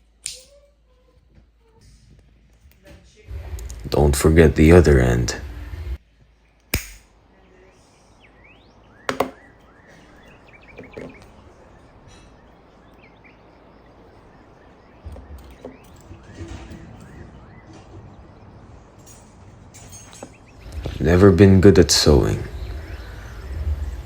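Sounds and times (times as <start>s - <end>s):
outdoor background hiss: 0.0s - 24.0s
small birds chirping: 6.0s - 24.0s
sharp clicks: 6.6s - 7.1s.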